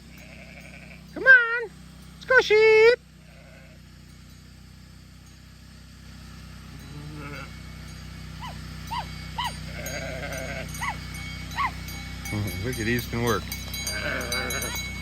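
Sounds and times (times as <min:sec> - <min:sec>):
sheep bleating: 0:00.0 - 0:01.4, 0:03.2 - 0:03.9, 0:06.7 - 0:07.6, 0:08.4 - 0:11.8, 0:13.8 - 0:15.0
low background rumble: 0:00.0 - 0:15.0.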